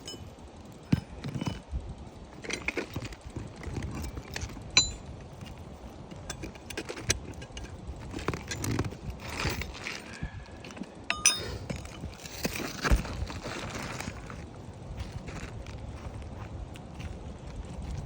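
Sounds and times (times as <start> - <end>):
metallic clink: 0.0 - 1.6, 4.0 - 5.1, 11.1 - 12.0
footsteps on shingle roof: 11.6 - 18.0.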